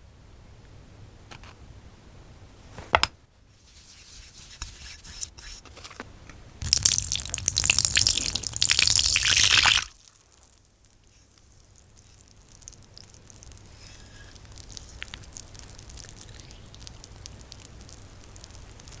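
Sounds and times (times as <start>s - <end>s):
slime squeezed by hand: 6.6s - 19.0s
wet crackling and popping: 6.6s - 19.0s.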